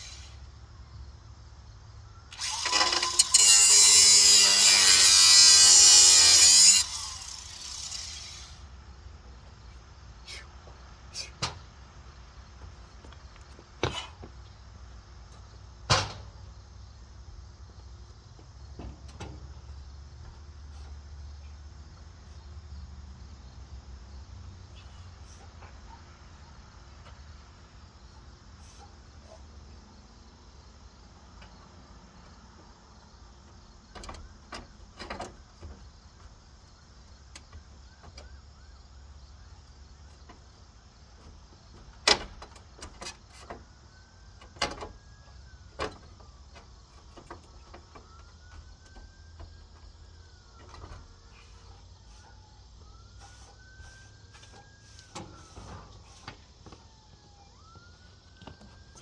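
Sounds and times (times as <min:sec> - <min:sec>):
distant siren wailing: 0:36.6 - 0:40.0, 0:43.5 - 0:59.0.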